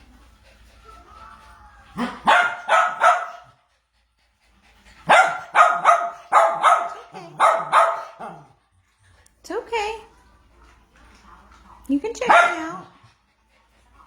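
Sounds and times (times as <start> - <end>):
dog barking: 2.0 - 3.6, 5.1 - 8.5, 12.2 - 12.9.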